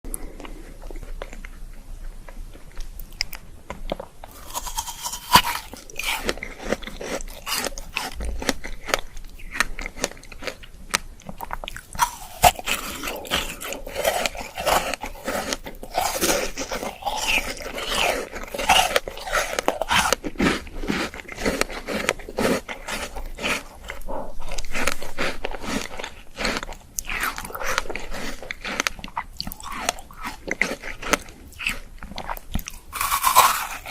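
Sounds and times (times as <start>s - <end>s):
ice being crunched: 32.9s - 33.9s.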